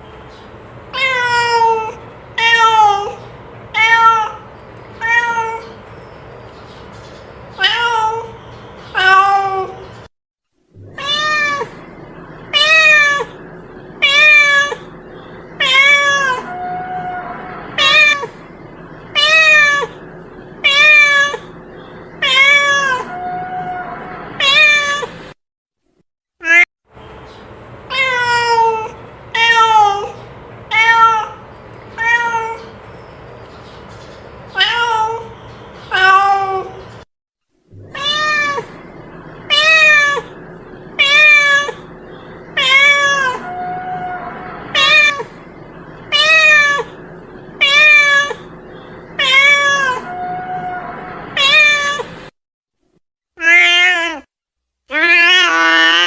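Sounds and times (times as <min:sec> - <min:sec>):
cat meowing: 0:01.0 - 0:03.2, 0:03.8 - 0:05.8, 0:07.6 - 0:09.8, 0:10.9 - 0:11.8, 0:12.5 - 0:13.4, 0:14.0 - 0:14.9, 0:15.6 - 0:18.4, 0:19.2 - 0:20.0, 0:20.6 - 0:21.6, 0:22.2 - 0:25.1, 0:27.9 - 0:31.4, 0:32.0 - 0:32.7, 0:34.6 - 0:35.3, 0:35.9 - 0:36.8, 0:37.8 - 0:38.8, 0:39.5 - 0:40.4, 0:41.0 - 0:41.9, 0:42.6 - 0:45.4, 0:46.1 - 0:47.0, 0:47.6 - 0:48.5, 0:49.2 - 0:52.1, 0:53.4 - 0:54.3, 0:54.9 - 0:56.0.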